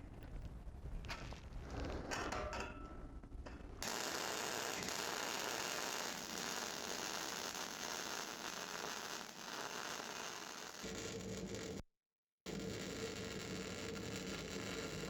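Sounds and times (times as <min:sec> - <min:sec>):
welding arc crackling hiss: 0:03.8 - 0:11.8, 0:12.5 - 0:15.0.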